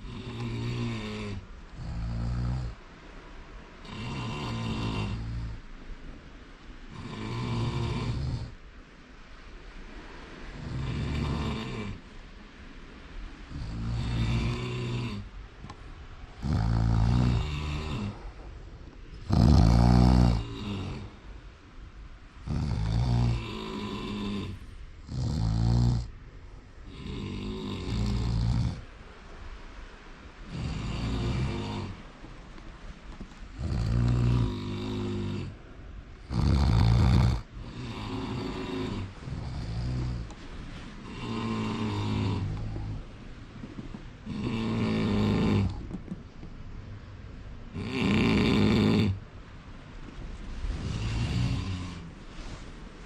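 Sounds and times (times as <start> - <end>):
snoring: 0.0 - 2.8, 3.8 - 5.6, 6.9 - 8.6, 10.6 - 12.0, 13.5 - 15.3, 16.3 - 18.4, 19.2 - 21.2, 22.4 - 26.1, 26.9 - 28.9, 30.4 - 32.0, 33.5 - 35.6, 36.2 - 43.0, 44.2 - 46.0, 47.7 - 49.2, 50.6 - 52.6.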